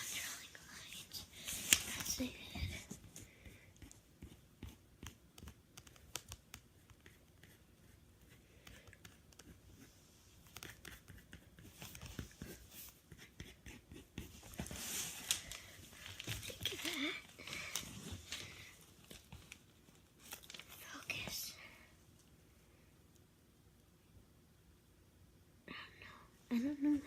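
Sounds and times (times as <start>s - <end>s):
pen scratching on paper: 3.8s - 14.4s
paper rustling: 14.2s - 21.0s.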